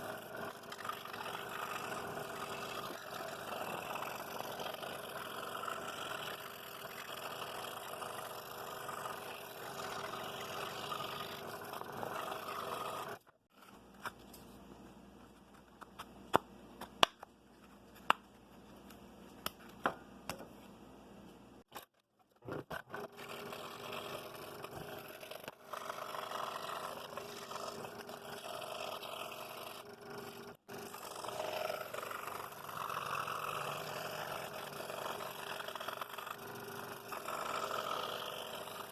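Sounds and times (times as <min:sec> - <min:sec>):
scroll saw cutting wood: 0:00.0 - 0:13.3, 0:22.4 - 0:38.9.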